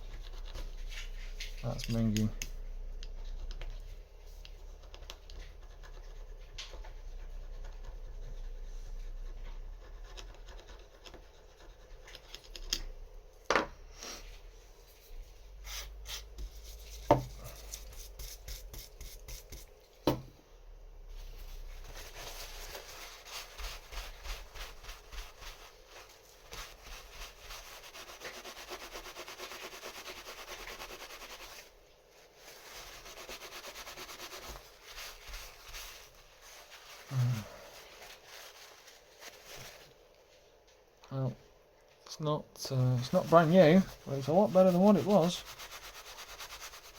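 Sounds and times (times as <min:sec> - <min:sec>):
brush scrubbing metal: 0:15.6 - 0:19.8, 0:21.1 - 0:37.2, 0:42.7 - 0:46.9.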